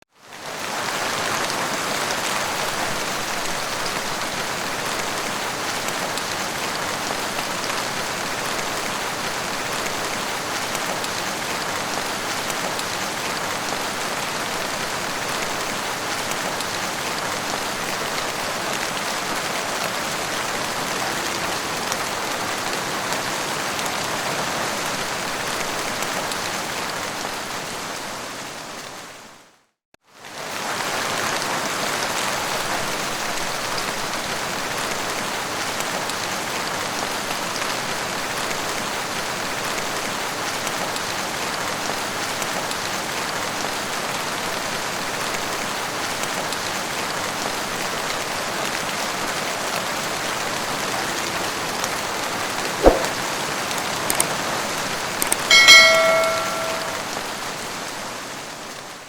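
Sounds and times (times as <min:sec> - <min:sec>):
heavy rain falling: 0:00.3 - 0:29.0.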